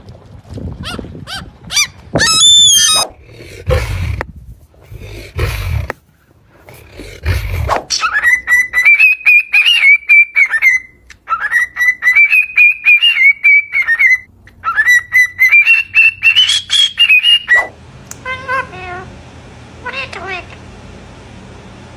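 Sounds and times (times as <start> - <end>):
bird whistling: 2.2 - 3.1, 7.9 - 17.7.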